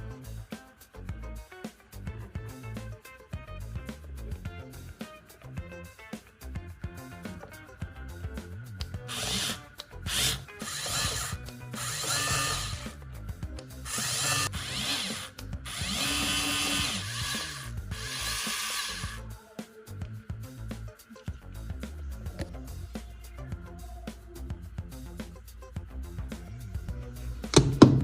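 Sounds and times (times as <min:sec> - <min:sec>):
steady electronic bass line: 0:00.0 - 0:09.4, 0:12.4 - 0:18.4, 0:20.0 - 0:28.0
harsh buzzing noise bursts: 0:09.1 - 0:13.0, 0:13.8 - 0:19.2.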